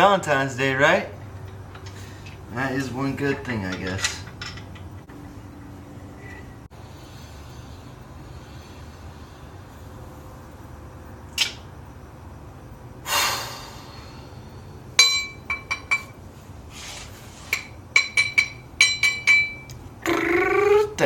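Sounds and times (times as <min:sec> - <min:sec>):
short hiss: 0:13.0 - 0:14.4
sharp ringing clinks: 0:15.0 - 0:16.2, 0:18.0 - 0:19.7.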